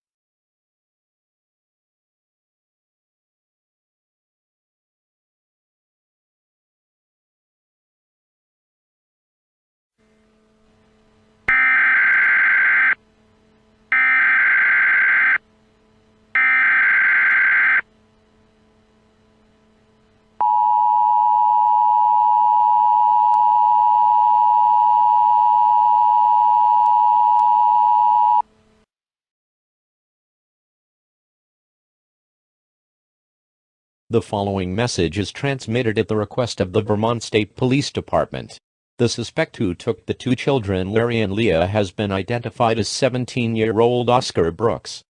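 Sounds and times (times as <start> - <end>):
digital data tone bursts: 11.5 - 13.0, 13.9 - 15.4, 16.4 - 17.8
two-tone attention signal: 11.5 - 13.0, 13.9 - 15.4, 16.4 - 17.8, 20.4 - 28.4.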